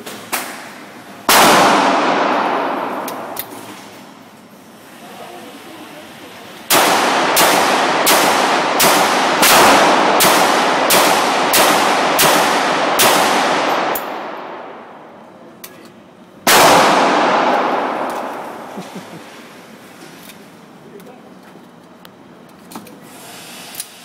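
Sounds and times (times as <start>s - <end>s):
gunshots with echo: 1.3s - 3.9s, 6.7s - 15.1s, 16.5s - 19.3s.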